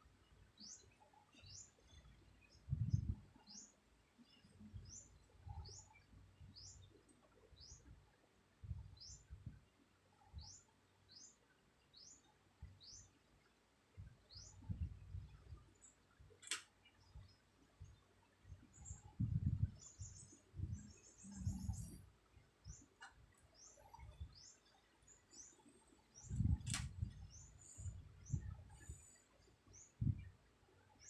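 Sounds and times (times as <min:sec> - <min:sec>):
bird chirping: 0:00.2 - 0:07.9, 0:08.9 - 0:09.4, 0:10.2 - 0:13.3, 0:14.2 - 0:16.0, 0:16.8 - 0:31.0
sharp click: 0:16.4 - 0:16.7, 0:26.6 - 0:27.0.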